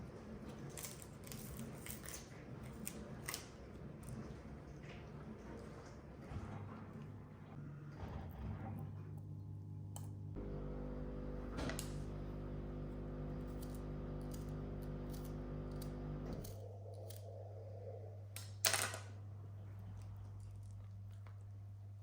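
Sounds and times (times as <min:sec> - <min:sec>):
background hum: 0:06.4 - 0:22.0
small appliance humming: 0:09.3 - 0:17.2.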